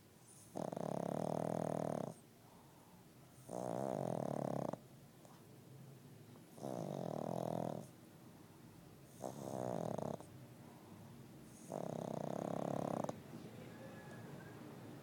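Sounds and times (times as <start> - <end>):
dog rasping snores: 0.2 - 2.2, 3.4 - 4.8, 6.5 - 8.0, 9.1 - 10.3, 11.5 - 13.2.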